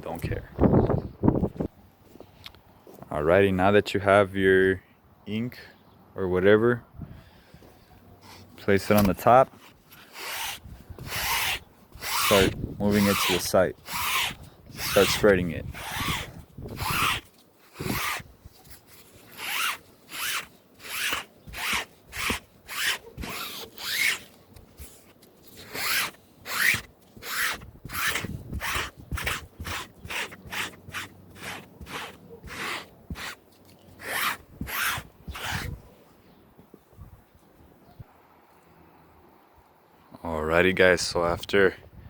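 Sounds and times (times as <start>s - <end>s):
sponge scrubbing fabric: 10.0s - 18.2s, 19.3s - 24.2s, 25.6s - 33.4s.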